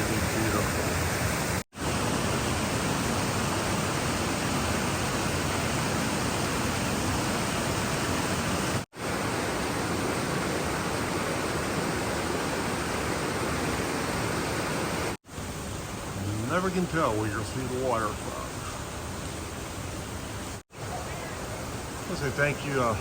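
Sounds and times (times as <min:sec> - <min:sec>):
waterfall rushing: 0:00.0 - 0:23.0.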